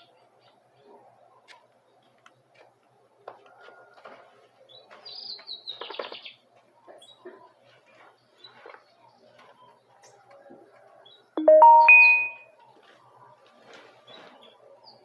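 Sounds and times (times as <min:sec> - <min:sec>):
bird song descending notes: 0:11.4 - 0:12.4.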